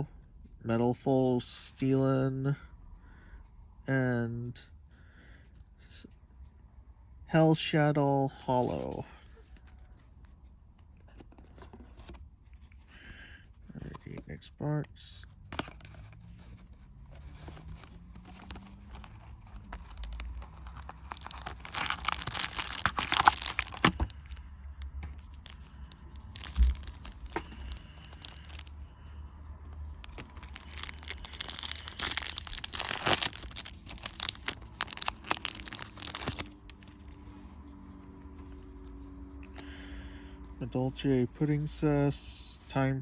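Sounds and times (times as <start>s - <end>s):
wrapper tearing and crinkling: 17.6s - 24.4s, 25.2s - 28.8s, 29.8s - 37.2s.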